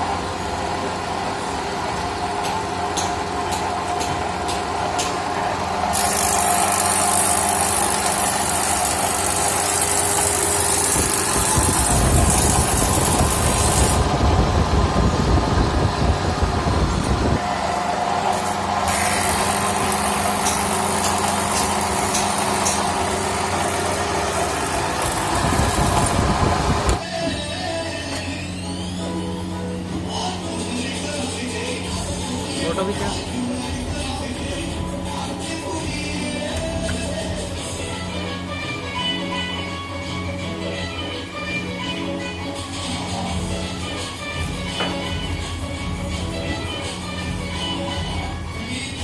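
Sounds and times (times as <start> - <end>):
electric wood planer running: 5.6 - 15.2, 17.4 - 27.0.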